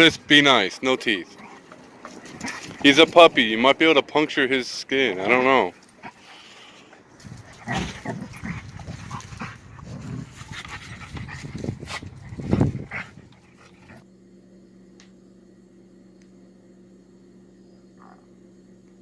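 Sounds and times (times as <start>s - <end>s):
puppies scuffling: 0.0s - 4.0s
steady low hum: 0.0s - 19.0s.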